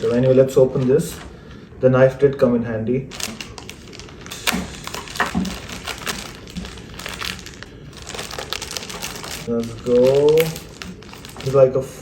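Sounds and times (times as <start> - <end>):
packaging crackling and crinkling: 0.0 - 1.3, 3.1 - 12.0
knife cutting packaging: 3.1 - 11.6.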